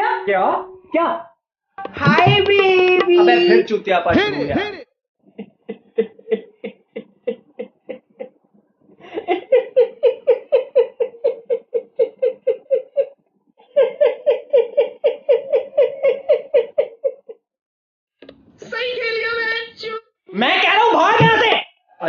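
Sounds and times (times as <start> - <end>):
person laughing hard: 4.1 - 4.8.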